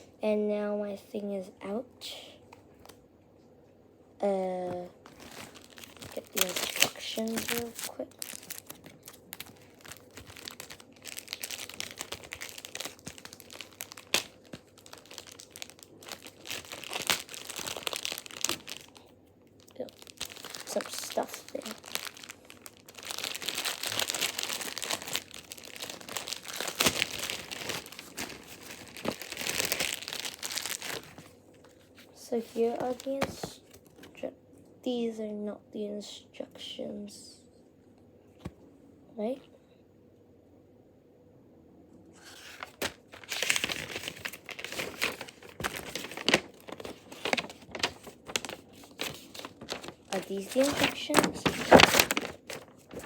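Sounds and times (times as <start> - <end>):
packaging crinkling and rustling: 4.6 - 34.2, 42.2 - 53.0.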